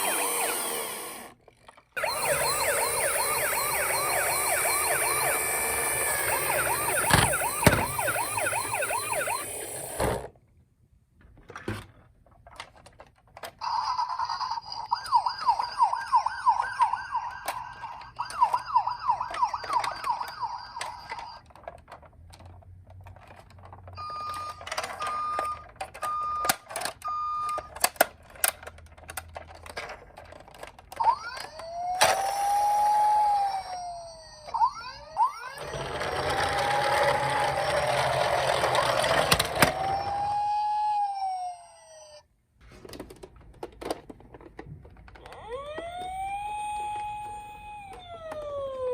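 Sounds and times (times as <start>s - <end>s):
electronic toy sirens: 0.0s - 1.4s, 2.0s - 10.1s, 13.6s - 21.5s, 24.0s - 27.9s, 30.9s - 42.3s, 45.2s - 48.9s.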